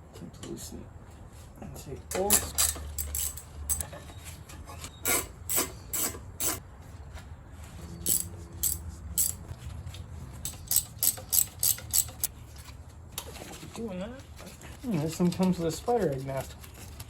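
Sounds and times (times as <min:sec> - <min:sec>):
hand ratchet wrench ratcheting: 0:02.1 - 0:03.8, 0:08.0 - 0:09.4, 0:10.4 - 0:12.3.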